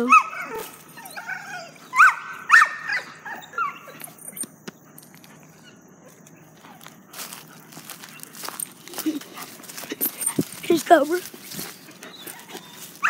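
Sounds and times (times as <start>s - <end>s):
dog whining: 0.0s - 4.5s, 11.6s - 13.0s.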